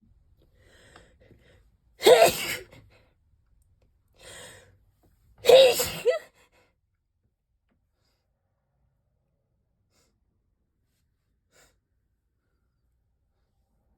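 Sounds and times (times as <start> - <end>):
person sneezing: 2.0 - 2.7, 5.4 - 6.3.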